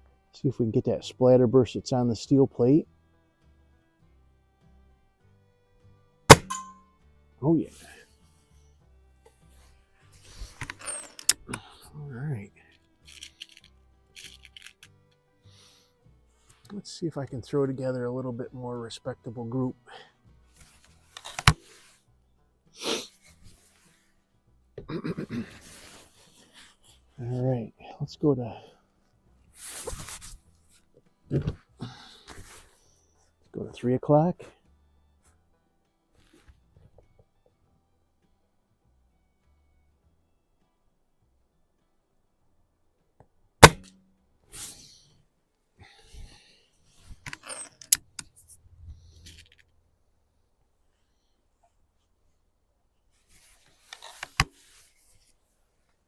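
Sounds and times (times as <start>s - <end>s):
air rifle shot crack: 6.3s - 6.6s, 43.6s - 44.0s.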